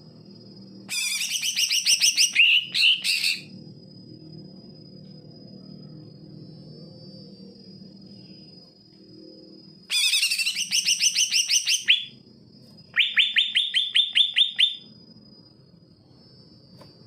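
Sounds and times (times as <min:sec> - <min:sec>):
bird singing sweeping notes: 0:00.9 - 0:03.5, 0:09.9 - 0:12.2, 0:12.9 - 0:14.9.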